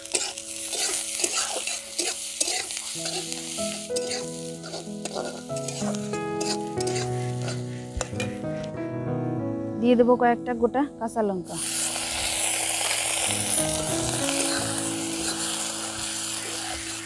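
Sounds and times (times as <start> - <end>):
spatula scraping pan: 0.0 - 7.6, 11.6 - 17.0
onion sizzling in oil: 0.0 - 8.2, 11.5 - 17.0
background music: 0.0 - 17.0.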